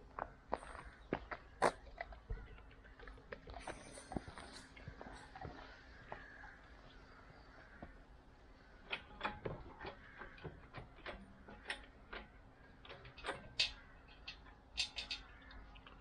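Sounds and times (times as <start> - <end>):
faint steady hum: 0.0 - 16.0
small hard objects clicking: 8.8 - 16.0.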